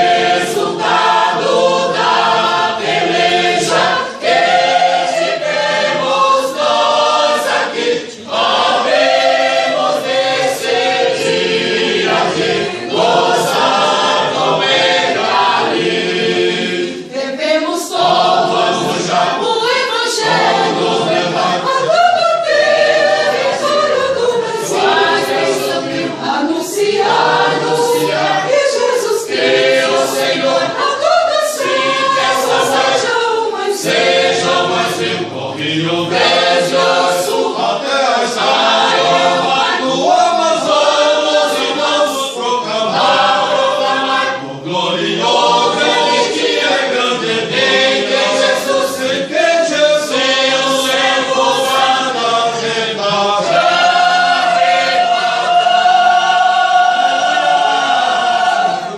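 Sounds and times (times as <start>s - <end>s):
choir singing a hymn: 0.0s - 58.9s.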